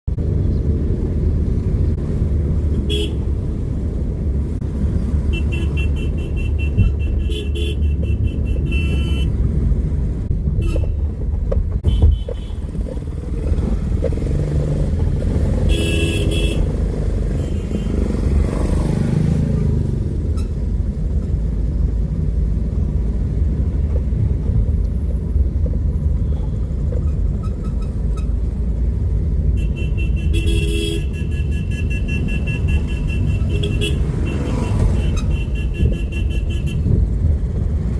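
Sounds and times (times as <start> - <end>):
motorcycle horns honking: 2.8 - 3.3, 5.2 - 9.4, 15.6 - 18.1, 29.5 - 36.9.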